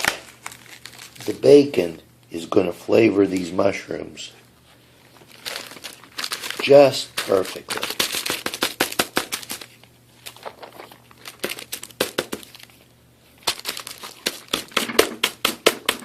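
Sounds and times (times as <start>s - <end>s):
plastic liner crinkling: 0.0s - 1.8s, 5.0s - 16.0s.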